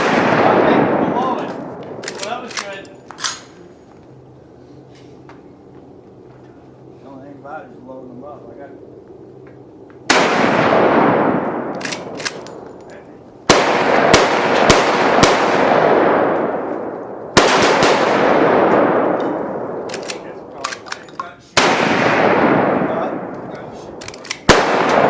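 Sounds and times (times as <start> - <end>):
sharp single gunshots: 0.0 - 2.4, 10.1 - 12.4, 13.5 - 19.8, 21.5 - 23.3, 24.4 - 25.0
gunshots with echoing tail: 0.0 - 2.5, 10.1 - 12.6, 13.5 - 25.0.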